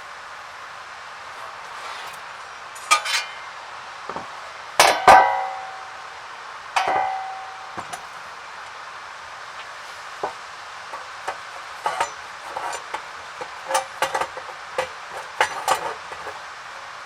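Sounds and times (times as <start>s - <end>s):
metal clanking with ring: 2.8s - 3.5s, 4.8s - 6.1s, 6.8s - 8.2s, 11.8s - 12.9s.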